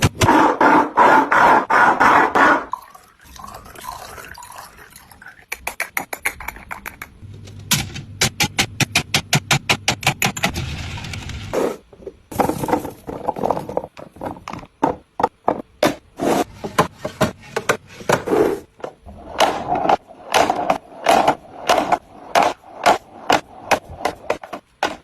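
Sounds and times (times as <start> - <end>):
groceries knocking and scraping: 5.9 - 25.0.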